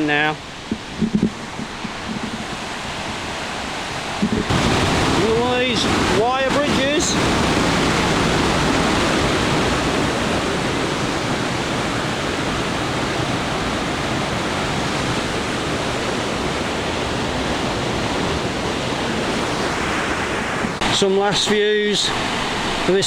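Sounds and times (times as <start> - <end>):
river water rushing: 0.0 - 23.0.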